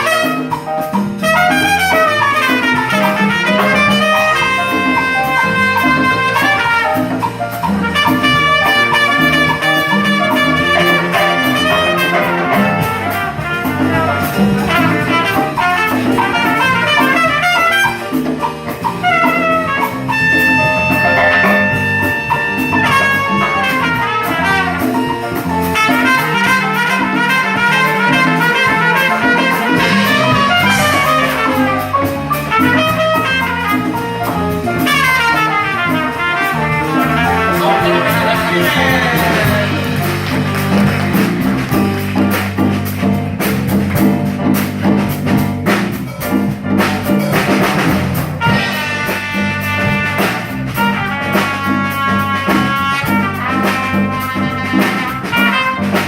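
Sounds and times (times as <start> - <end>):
bass: 0.0 - 56.0
drum kit: 0.0 - 56.0
trumpet playing jazz runs: 0.0 - 56.0.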